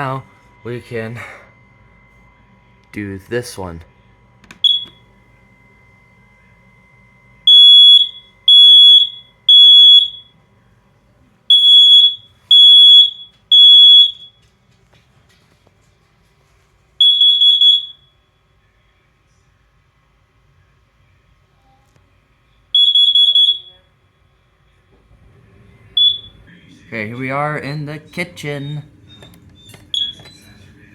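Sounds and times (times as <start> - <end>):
smoke alarm beeping: 4.5 - 5.1, 7.4 - 10.4, 11.5 - 14.5, 17.0 - 18.4, 22.7 - 23.9, 25.9 - 30.9.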